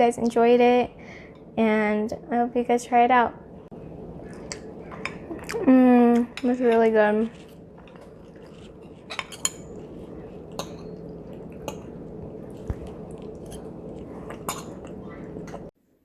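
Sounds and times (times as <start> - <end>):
steady low hum: 0.0 - 16.0
cutlery clinking on dishes: 8.9 - 9.8, 14.4 - 14.9.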